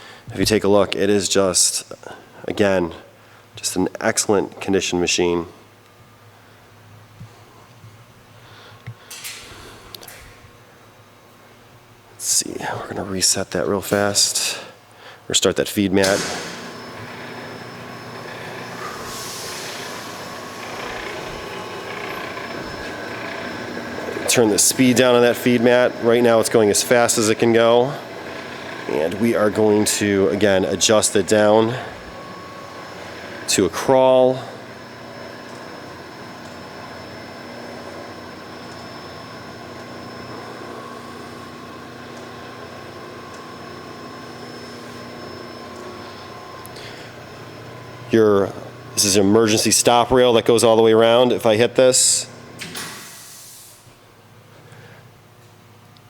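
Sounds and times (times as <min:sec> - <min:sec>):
conveyor belt running: 0:12.2 - 0:14.7, 0:15.4 - 0:54.9.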